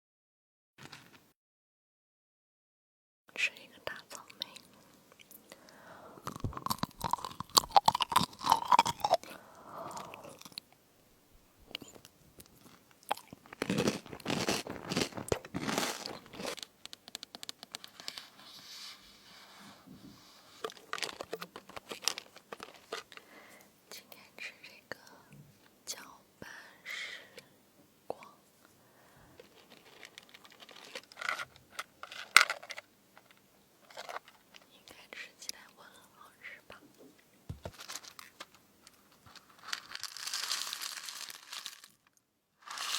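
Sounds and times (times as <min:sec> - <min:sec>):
crunching fruit crisps: 0:06.2 - 0:09.3, 0:12.5 - 0:17.8, 0:20.6 - 0:23.2, 0:29.4 - 0:31.5, 0:37.7 - 0:42.9.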